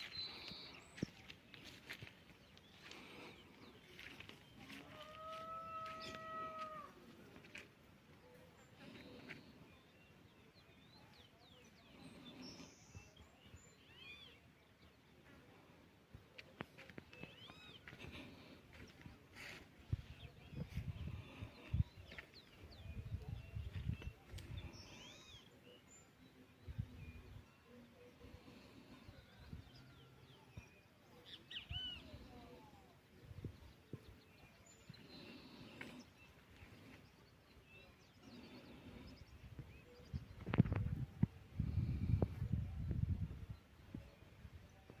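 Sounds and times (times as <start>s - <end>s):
faint birds chirping: 0.0s - 45.0s.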